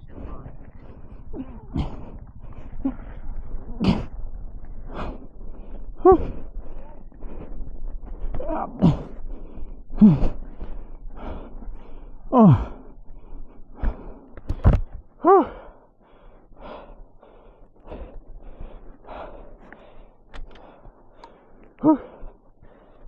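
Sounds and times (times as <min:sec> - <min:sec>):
man panting: 0:00.0 - 0:23.0
man groaning with exertion: 0:08.4 - 0:09.1, 0:12.3 - 0:12.8, 0:15.2 - 0:15.6, 0:21.8 - 0:22.2.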